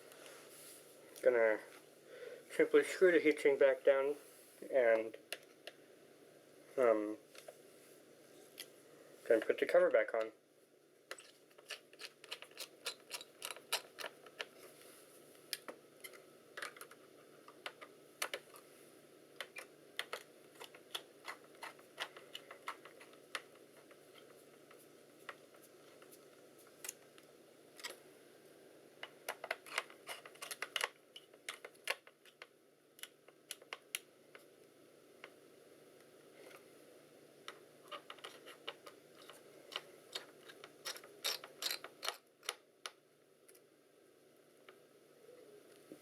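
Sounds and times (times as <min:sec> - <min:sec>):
screwdriver and metal parts clicking: 0:11.1 - 0:14.5, 0:38.0 - 0:42.6.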